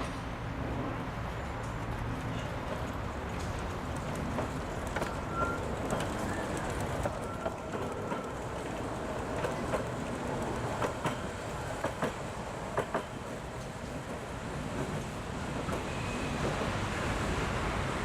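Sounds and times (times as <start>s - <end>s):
small train rumbling on track: 0.0s - 18.0s
wheels clicking on rails: 1.4s - 16.7s
faint wheel squeals: 5.1s - 6.6s.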